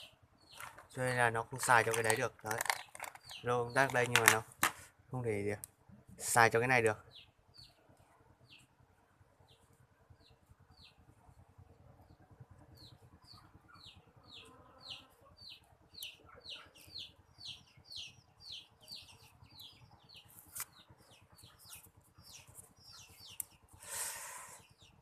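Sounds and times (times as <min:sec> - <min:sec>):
bird chirping: 0:00.0 - 0:05.5, 0:06.2 - 0:08.8, 0:09.4 - 0:25.0.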